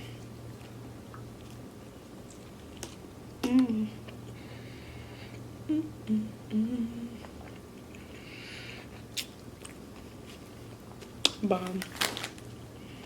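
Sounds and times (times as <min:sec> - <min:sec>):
person humming mm: 0:03.4 - 0:04.0, 0:05.6 - 0:07.4.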